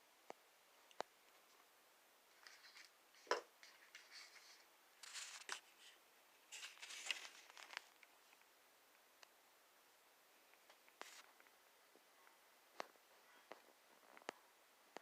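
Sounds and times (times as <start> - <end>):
soft rustling and scraping: 2.3 - 8.5, 10.6 - 14.5.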